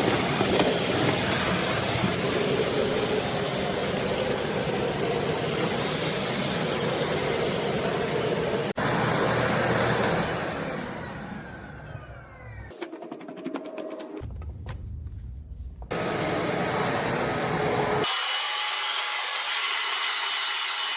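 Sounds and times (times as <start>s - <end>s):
vacuum cleaner running: 0.0s - 12.7s, 15.9s - 18.6s
vacuum motor spinning down: 0.0s - 12.7s, 15.9s - 18.0s.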